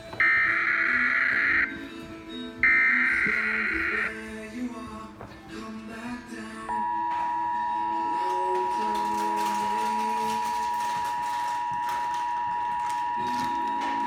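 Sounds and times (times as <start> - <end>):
two-tone alert signal: 0.0 - 1.8, 2.6 - 4.2, 6.7 - 14.0
faint music: 0.0 - 14.0.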